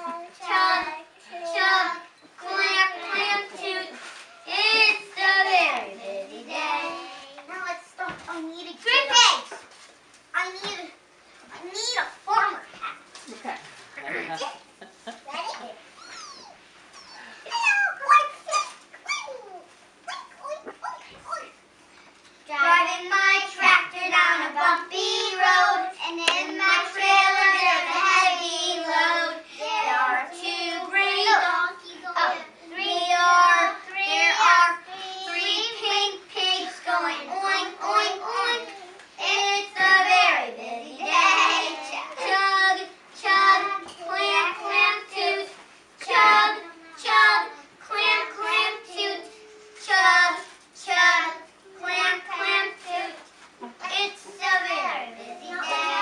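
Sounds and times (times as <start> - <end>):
children singing together: 0.0 - 7.3, 22.8 - 53.2, 53.8 - 56.0.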